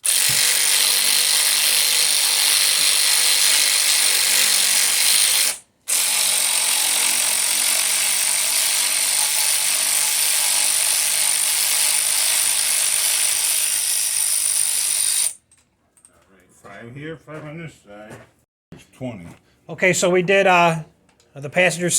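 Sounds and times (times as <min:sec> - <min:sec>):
ratchet whirring and ratcheting: 0:00.0 - 0:15.4.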